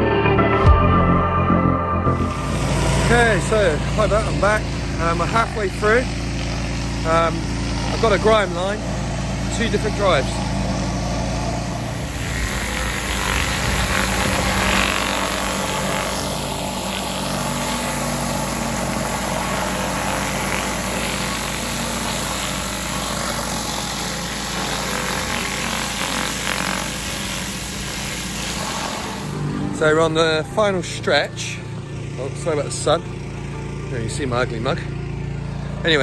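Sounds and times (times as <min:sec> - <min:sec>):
petrol engine humming: 0:00.0 - 0:36.0
water jet hissing: 0:02.2 - 0:29.6.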